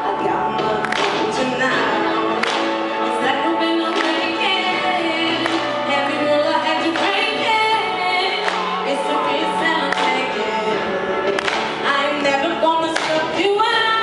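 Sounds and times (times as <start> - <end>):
choir singing with music: 0.0 - 14.0.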